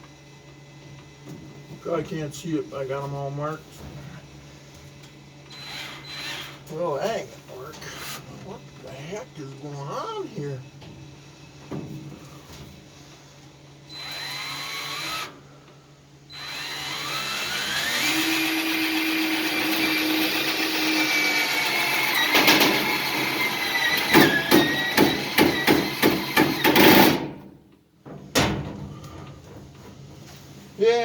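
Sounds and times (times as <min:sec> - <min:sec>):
power drill driving screws: 0:05.5 - 0:06.6, 0:13.9 - 0:15.4, 0:16.3 - 0:27.3.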